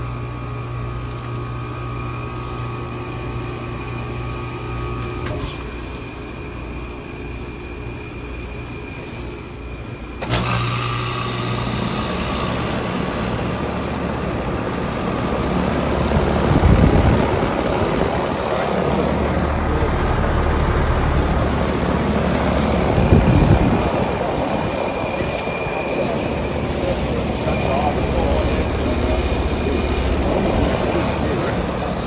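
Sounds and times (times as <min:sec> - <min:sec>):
heat pump low hum: 0:00.0 - 0:32.0
heat pump rushing noise: 0:00.0 - 0:32.0.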